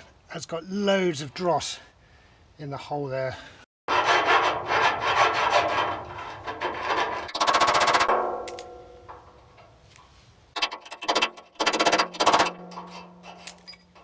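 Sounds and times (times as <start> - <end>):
hand tool rasping metal: 3.9 - 8.1.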